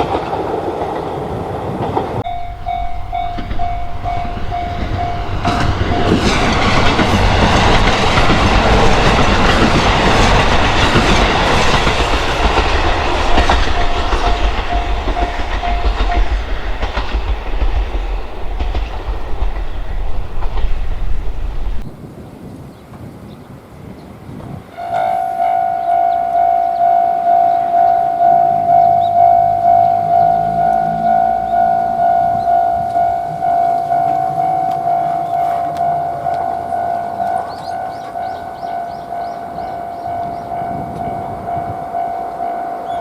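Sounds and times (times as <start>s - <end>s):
wheels clattering over rail joints: 0.0s - 22.0s
diesel train rumble: 1.1s - 22.0s
level-crossing alarm bell ringing: 2.2s - 21.9s, 25.0s - 43.0s.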